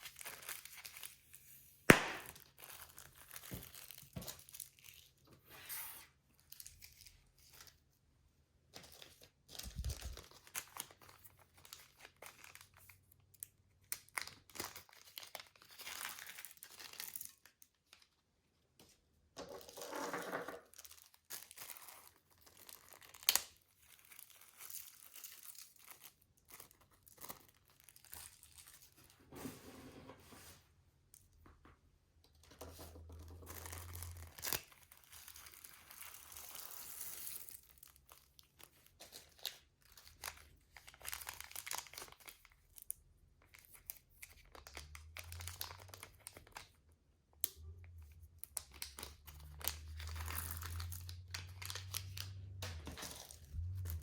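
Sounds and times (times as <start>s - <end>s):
plastic bags crinkling: 8.8s - 12.8s, 33.0s - 36.8s, 48.6s - 54.0s.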